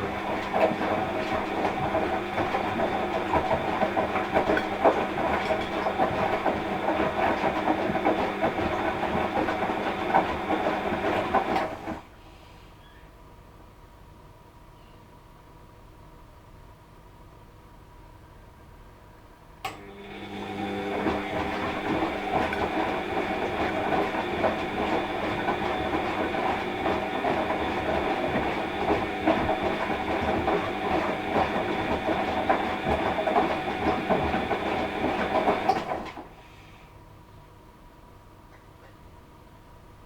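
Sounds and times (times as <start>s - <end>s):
washing machine drum turning: 0.0s - 12.0s, 19.8s - 36.2s.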